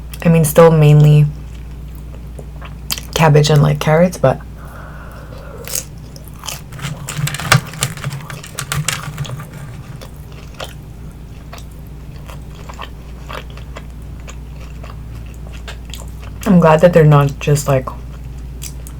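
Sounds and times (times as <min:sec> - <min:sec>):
crunchy chewing of spring roll: 0:05.7 - 0:16.6, 0:18.0 - 0:18.9.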